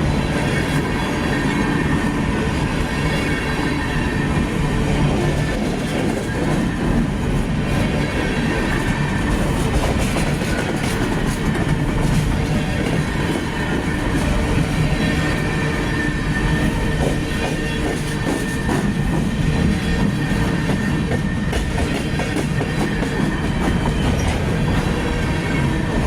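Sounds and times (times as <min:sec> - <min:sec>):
rail clicks: 0:00.0 - 0:26.0
train wheels rumbling on rail: 0:00.0 - 0:26.0.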